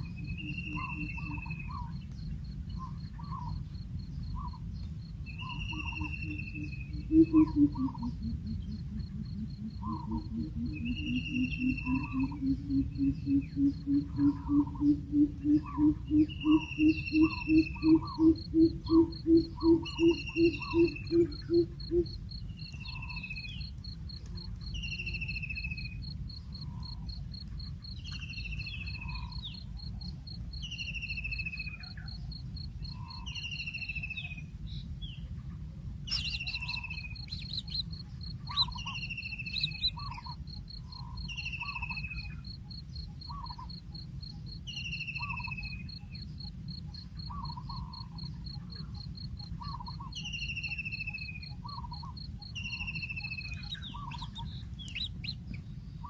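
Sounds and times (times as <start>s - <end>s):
birds calling: 0.0s - 3.6s, 4.2s - 23.5s, 36.1s - 42.4s, 43.0s - 43.8s, 44.7s - 56.0s
insect trill: 0.0s - 35.2s, 35.9s - 56.0s.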